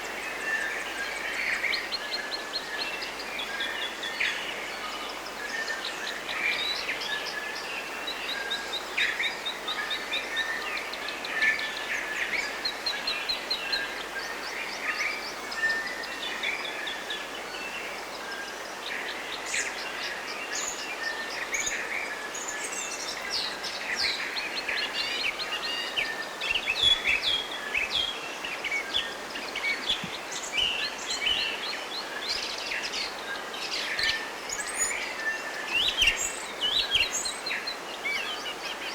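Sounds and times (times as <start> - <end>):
steady background hiss: 0.0 - 38.9
birds singing and chirping: 22.5 - 38.9.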